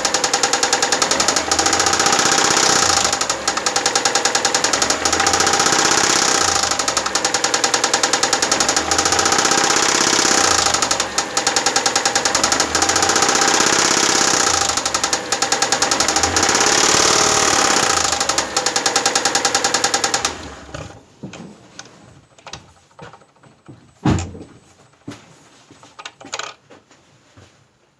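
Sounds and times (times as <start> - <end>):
knocking engine revving: 0.0 - 21.0.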